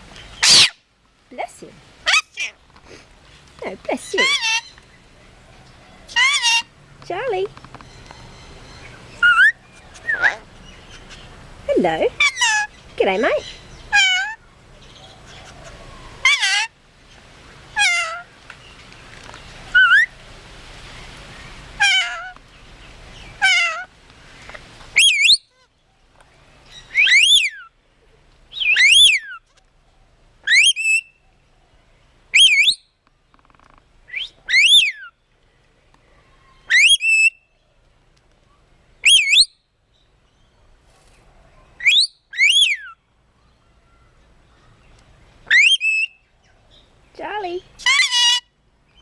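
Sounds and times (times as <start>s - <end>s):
parrot whistling calls: 0.4s - 0.8s, 9.2s - 10.4s, 25.0s - 25.5s, 26.9s - 27.7s, 28.6s - 29.4s, 30.5s - 31.1s, 32.4s - 32.8s, 34.1s - 35.1s, 36.7s - 37.4s, 39.0s - 39.6s, 41.8s - 43.0s, 45.5s - 46.2s.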